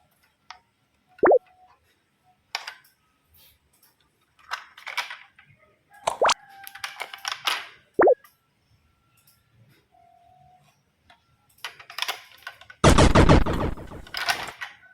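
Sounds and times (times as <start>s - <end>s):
plastic toys clattering: 3.8s - 7.9s, 11.6s - 12.8s.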